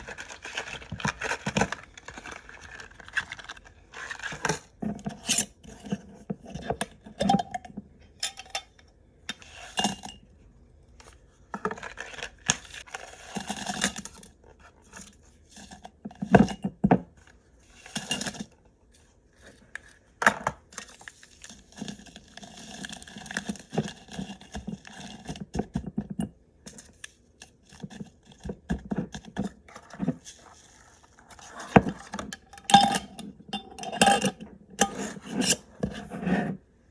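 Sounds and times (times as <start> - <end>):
items scraping into place: 0.0 - 7.4, 28.8 - 36.7.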